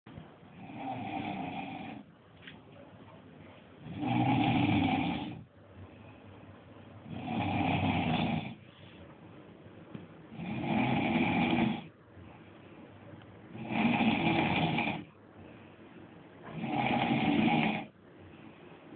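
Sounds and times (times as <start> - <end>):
quiet breathing: 0.2 - 18.9
person snoring loudly: 0.6 - 2.0, 3.8 - 5.4, 7.1 - 8.6, 10.3 - 11.9, 13.6 - 15.1, 16.5 - 17.9.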